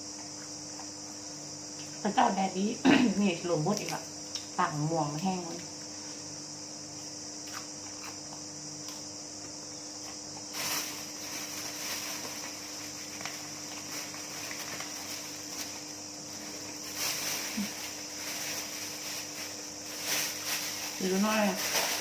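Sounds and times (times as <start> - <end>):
crickets chirring: 0.0 - 22.0.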